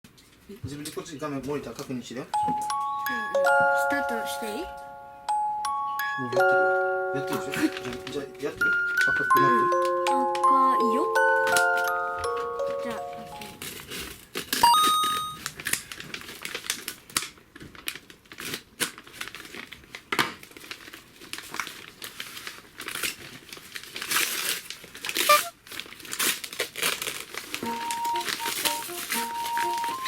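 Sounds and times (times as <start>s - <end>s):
chiming melody: 2.4s - 13.6s, 14.6s - 15.4s, 27.6s - 30.0s
packaging crinkling and rustling: 7.3s - 10.6s, 11.2s - 30.0s
packaging tearing: 7.4s - 9.4s, 13.5s - 30.0s.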